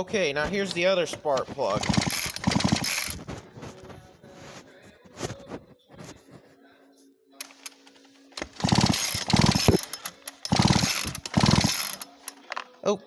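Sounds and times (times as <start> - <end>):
chainsaw recoil starter pulls: 1.7 - 3.2, 8.4 - 12.2.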